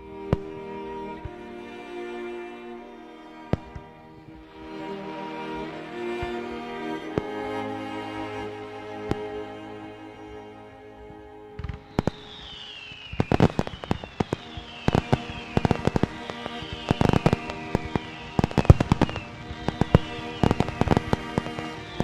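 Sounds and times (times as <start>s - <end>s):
background music: 0.0s - 12.9s, 13.6s - 22.0s
falling firework whistle: 11.6s - 22.0s
fireworks bangs and crackles: 11.6s - 22.0s.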